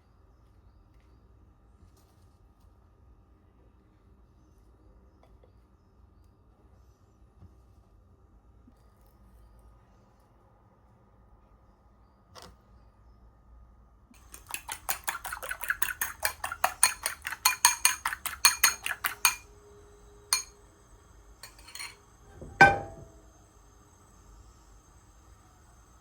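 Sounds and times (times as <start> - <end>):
whisk beating in a bowl: 14.2 - 19.5, 20.3 - 20.5, 21.4 - 22.0
loud clink with ring: 16.8 - 19.5, 20.4 - 20.6, 21.4 - 22.0, 22.6 - 23.2.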